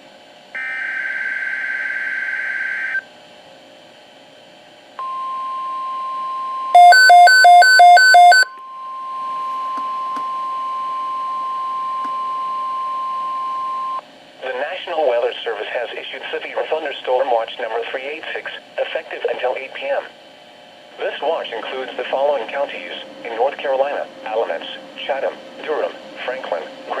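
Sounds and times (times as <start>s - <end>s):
alternating two-pitch alert beeps: 6.8s - 8.5s
steady warning alarm tone: 6.8s - 14.0s.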